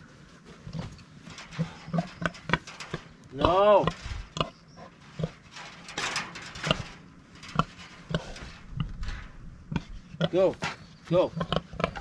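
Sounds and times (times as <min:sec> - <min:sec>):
pig grunting: 0:01.5 - 0:05.5, 0:06.5 - 0:09.0, 0:09.7 - 0:12.0.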